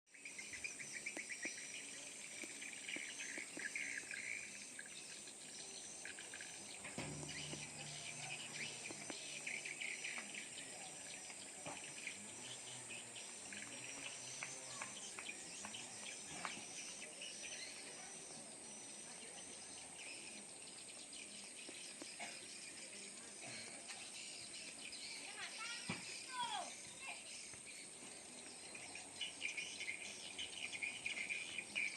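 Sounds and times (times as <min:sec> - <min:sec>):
steady high-pitched whine: 0:00.1 - 0:31.9
low hum: 0:05.4 - 0:16.3.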